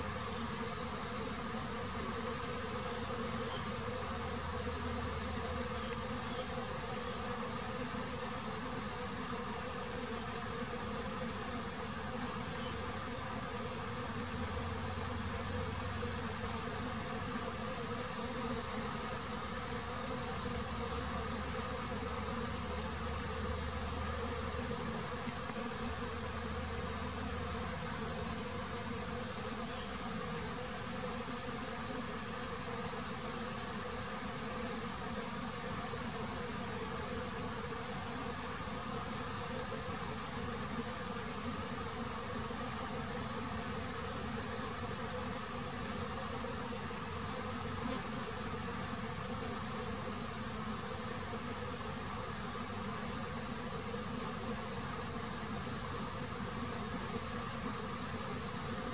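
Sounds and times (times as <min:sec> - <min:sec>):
bees buzzing: 0:00.0 - 0:58.9.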